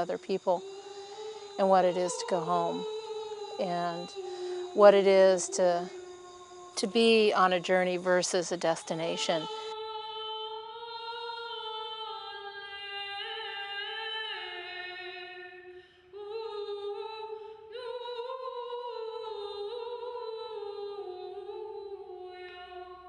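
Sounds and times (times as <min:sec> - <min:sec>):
woman singing unaccompanied: 0:00.0 - 0:15.6, 0:16.2 - 0:23.0.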